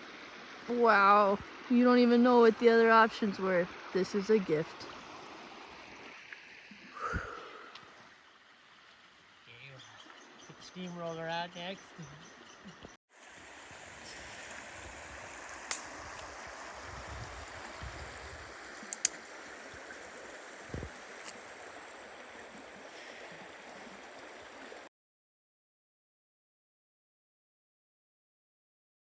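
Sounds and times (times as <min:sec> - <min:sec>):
flowing river rushing: 0:00.0 - 0:08.1, 0:13.2 - 0:24.9
sharp clicks: 0:18.9 - 0:19.3.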